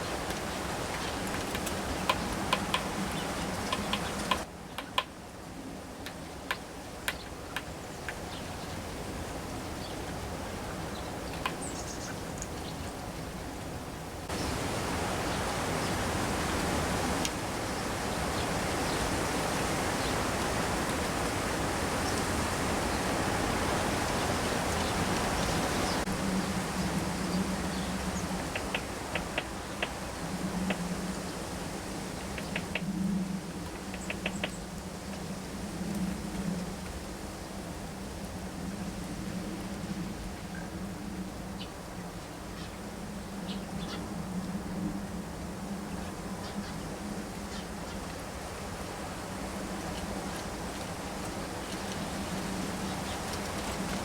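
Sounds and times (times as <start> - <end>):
outdoor background hiss: 0.0 - 54.0
faint sharp ticks: 3.6 - 5.1.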